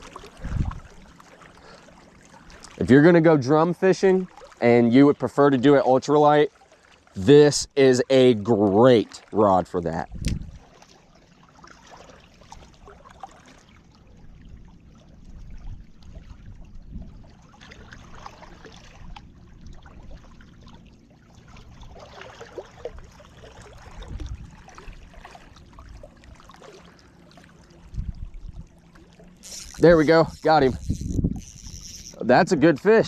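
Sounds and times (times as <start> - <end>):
wind rumble on microphone: 0.0 - 1.0, 10.0 - 10.7, 14.4 - 17.4, 23.8 - 25.2, 27.8 - 28.8, 29.6 - 32.2
water lapping at shoreline: 0.0 - 33.0
faint ticks: 29.4 - 32.2.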